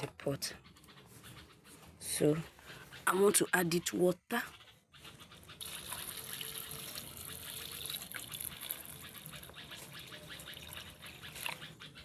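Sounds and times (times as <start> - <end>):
water pouring into a pot: 5.6 - 9.2.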